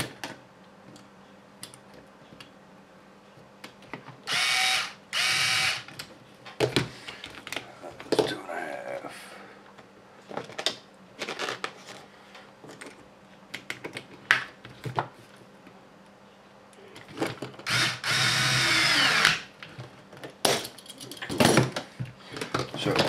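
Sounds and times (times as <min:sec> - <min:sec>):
electric screwdriver running: 0:04.3 - 0:05.9, 0:17.7 - 0:19.4.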